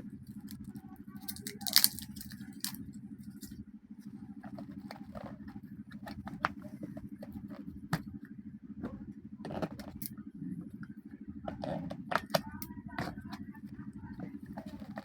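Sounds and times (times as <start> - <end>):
steady low hum: 0.0 - 15.0
batteries clicking in plastic compartment: 1.2 - 3.6.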